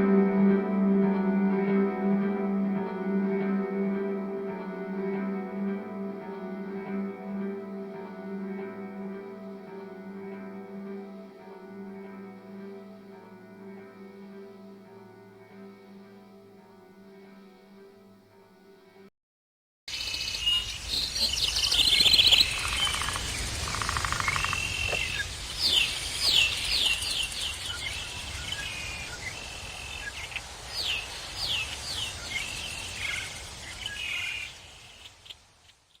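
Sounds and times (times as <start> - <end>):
birds chirping and trilling: 19.9 - 35.4.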